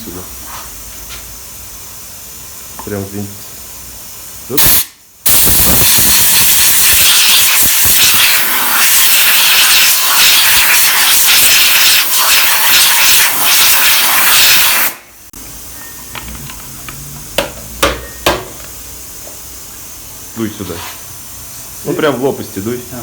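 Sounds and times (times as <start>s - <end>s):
compressed air blow gun hissing: 4.6s - 15.0s.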